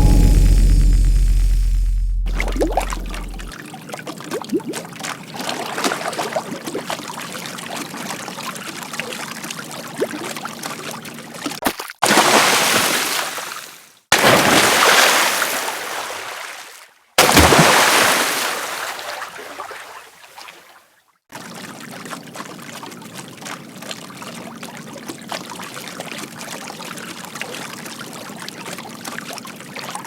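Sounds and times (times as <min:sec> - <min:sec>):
rushes of splashing water: 0:12.0 - 0:20.7.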